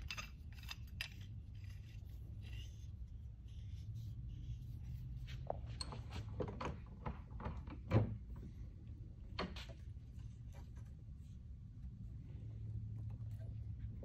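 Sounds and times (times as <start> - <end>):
metal parts clicking and knocking: 0.0 - 2.7
steady low hum: 0.0 - 14.0.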